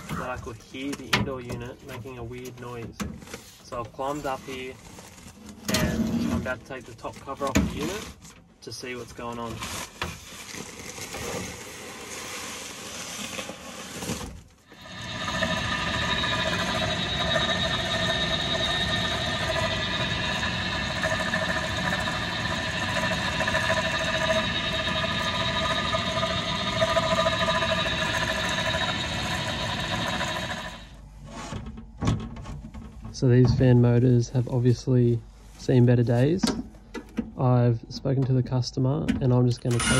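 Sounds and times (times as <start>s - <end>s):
fan motors whining: 14.7s - 31.0s.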